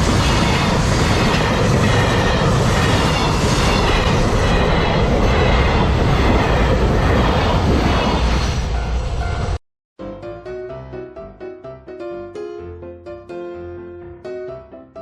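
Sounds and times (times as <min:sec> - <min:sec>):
freight train rumbling past: 0:00.0 - 0:09.6.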